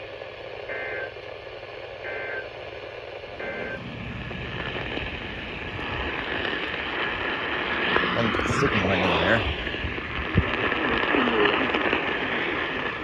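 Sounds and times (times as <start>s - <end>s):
radio static hiss: 3.4s - 13.0s.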